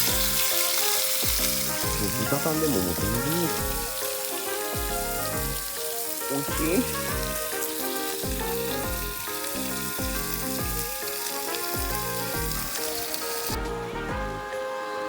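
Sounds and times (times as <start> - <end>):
meat sizzling in oil: 0.0 - 13.6
electronic music with bass beat: 0.0 - 14.7.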